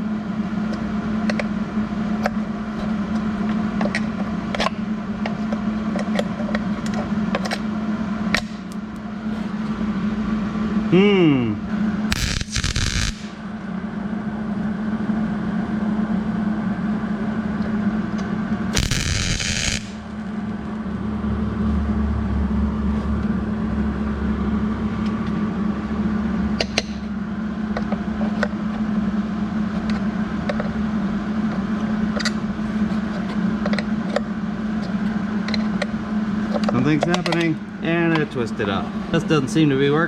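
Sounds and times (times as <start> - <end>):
electrical hum of equipment: 0.0 - 40.0
harsh burst of noise: 12.1 - 13.4, 18.8 - 20.0.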